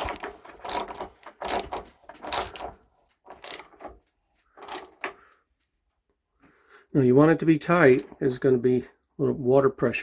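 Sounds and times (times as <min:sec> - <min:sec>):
ratchet wrench ratcheting: 0:00.0 - 0:02.7, 0:03.3 - 0:03.9, 0:04.6 - 0:05.1.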